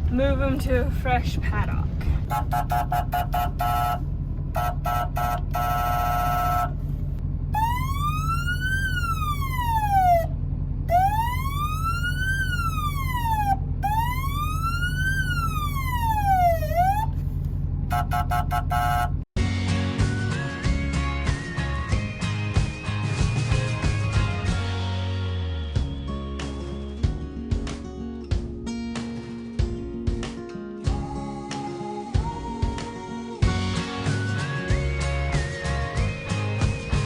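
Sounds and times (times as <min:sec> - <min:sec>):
vehicle engine running: 0:00.0 - 0:19.3
electronic siren yelping and wailing: 0:07.6 - 0:17.2.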